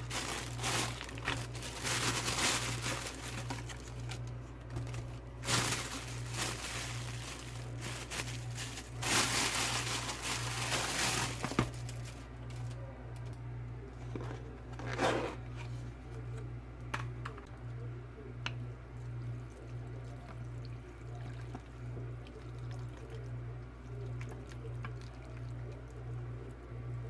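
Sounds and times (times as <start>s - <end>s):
liquid sounds from bowl: 18.4s - 26.7s.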